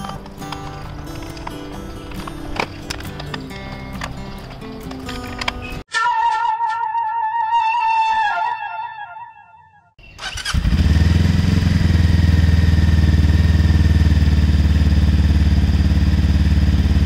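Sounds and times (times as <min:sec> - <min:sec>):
motorcycle engine starting and running: 0:00.0 - 0:05.8, 0:10.0 - 0:17.0.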